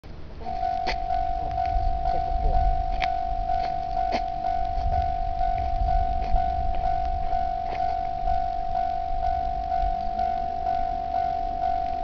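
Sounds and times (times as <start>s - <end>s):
low rumble: 0.1s - 12.0s
steady tone: 0.1s - 12.0s
level crossing warning bell: 0.4s - 12.0s.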